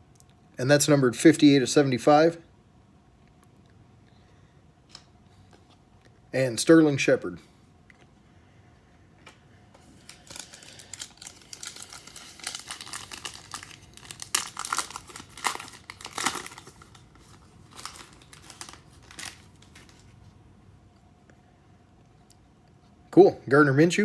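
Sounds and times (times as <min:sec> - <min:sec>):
plastic wrapper crinkling: 0:09.8 - 0:20.2.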